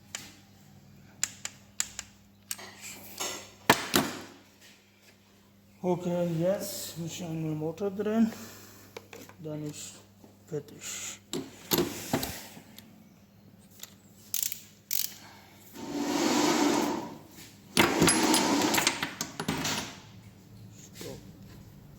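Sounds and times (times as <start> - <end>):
ratchet wrench clicking: 13.8 - 15.2.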